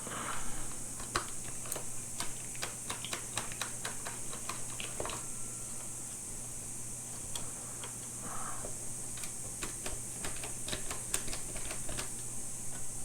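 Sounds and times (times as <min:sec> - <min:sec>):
steady high hiss: 0:05.1 - 0:09.4.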